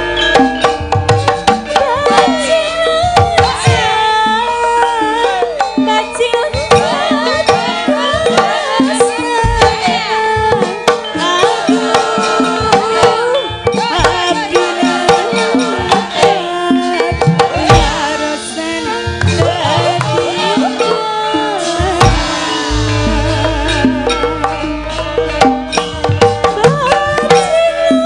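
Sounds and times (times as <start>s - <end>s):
metallophone tones: 0.0s - 28.0s
woman singing ornamented vocal: 1.8s - 28.0s
hand drum strokes: 19.2s - 28.0s.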